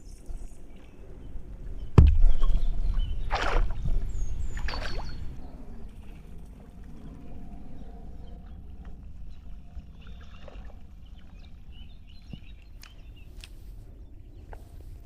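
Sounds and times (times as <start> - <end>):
water splashing: 1.8 - 5.4, 9.2 - 11.8
sharp thump: 2.0 - 2.6.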